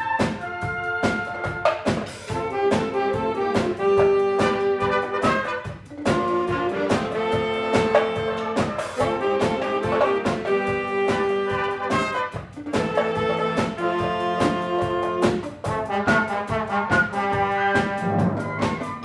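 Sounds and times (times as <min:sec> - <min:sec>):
brass-led wind orchestra: 0:00.0 - 0:19.0
steady percussion beat: 0:00.0 - 0:19.0.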